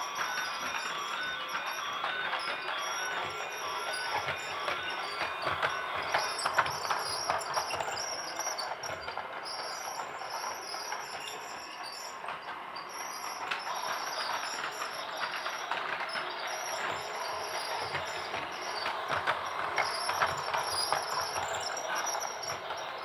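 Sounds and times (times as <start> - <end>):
toy train clattering: 0.0 - 23.0.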